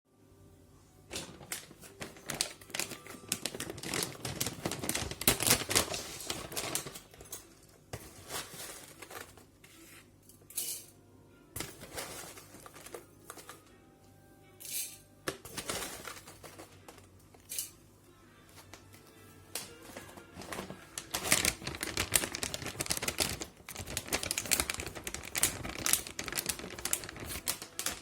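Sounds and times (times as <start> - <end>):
handling clicks taps and crinkles: 18.6 - 28.0.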